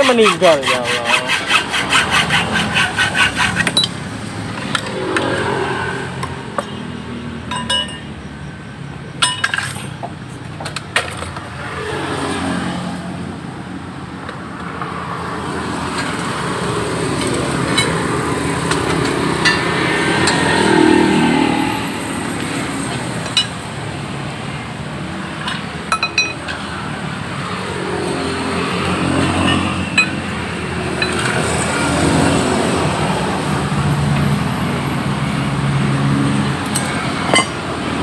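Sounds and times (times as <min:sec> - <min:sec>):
traffic passing: 0:00.0 - 0:38.0
sharp metallic clinks: 0:07.4 - 0:08.2.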